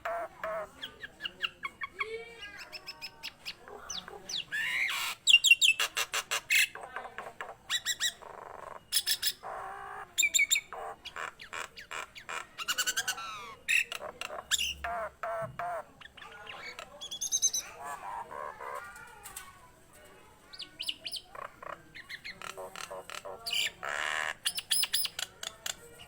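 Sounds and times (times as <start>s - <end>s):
bird singing: 6.5s - 18.8s, 20.6s - 25.8s.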